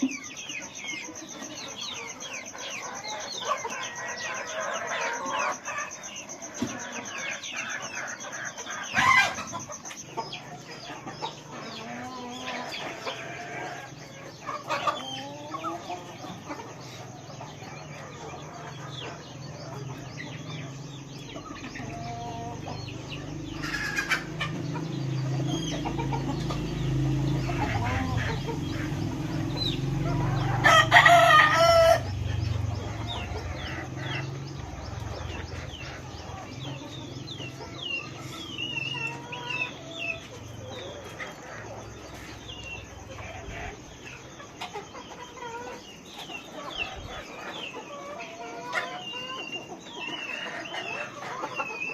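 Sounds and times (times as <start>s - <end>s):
chickens clucking: 0.0s - 51.9s
rooster crowing: 29.5s - 34.2s.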